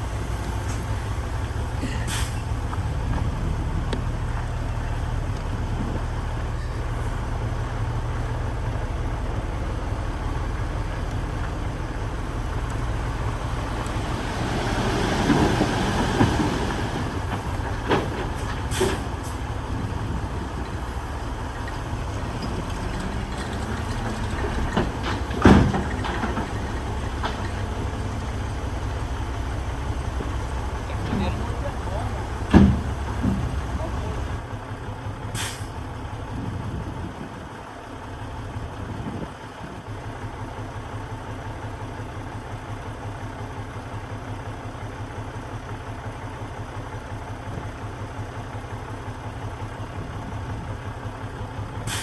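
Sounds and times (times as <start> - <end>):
machinery rattling: 0.0 - 34.4
construction machinery engine running: 0.0 - 52.0.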